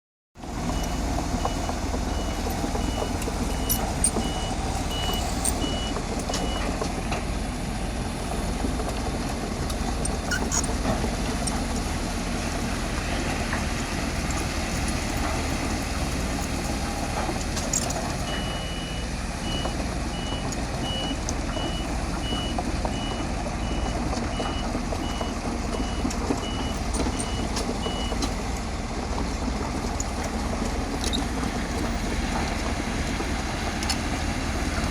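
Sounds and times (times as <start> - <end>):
bulldozer diesel engine: 0.4 - 34.9
reversing alarm beeping: 0.8 - 6.6.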